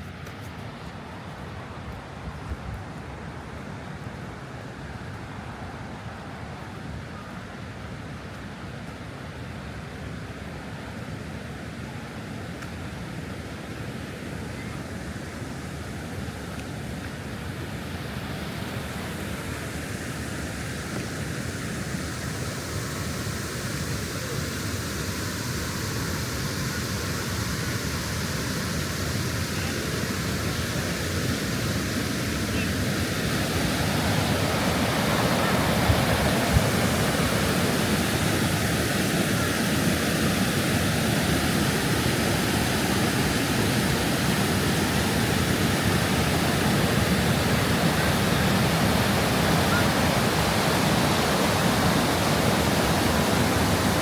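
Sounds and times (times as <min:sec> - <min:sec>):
waterfall roaring: 0:13.1 - 0:54.0.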